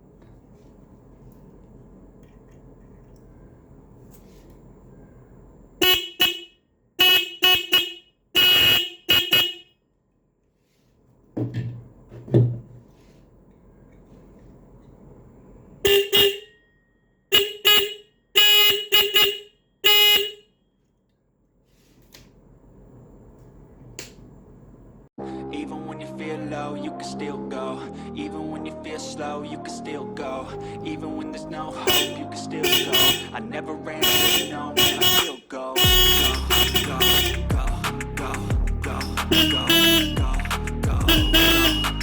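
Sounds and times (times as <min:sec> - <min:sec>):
electric horn honking: 0:05.8 - 0:09.6, 0:15.9 - 0:16.6, 0:17.3 - 0:20.4, 0:30.4 - 0:33.4, 0:34.0 - 0:37.8, 0:39.2 - 0:42.0
low thumps: 0:11.4 - 0:12.9.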